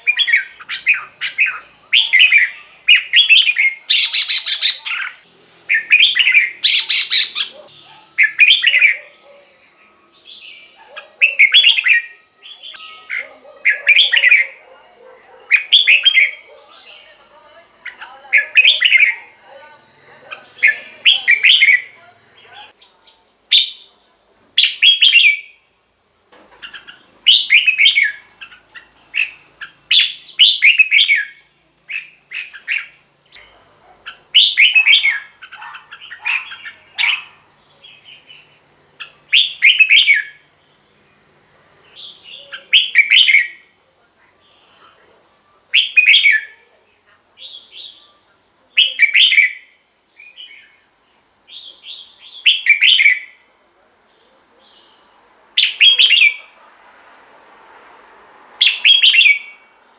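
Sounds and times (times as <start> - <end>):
bird singing whistled phrases: 0.0 - 7.6, 10.3 - 14.6, 17.9 - 19.3, 19.9 - 22.0, 24.6 - 25.6, 27.3 - 28.2, 29.2 - 32.9, 34.1 - 37.3, 39.0 - 40.4, 42.0 - 43.6, 45.8 - 46.5, 48.8 - 50.8, 51.5 - 53.4, 55.6 - 56.4, 58.6 - 59.6.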